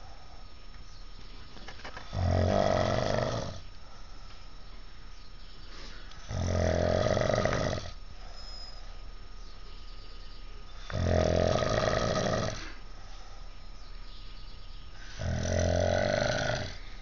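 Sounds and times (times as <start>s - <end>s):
man snoring: 2.1s - 3.6s, 6.2s - 8.0s, 10.8s - 12.8s, 15.0s - 16.9s.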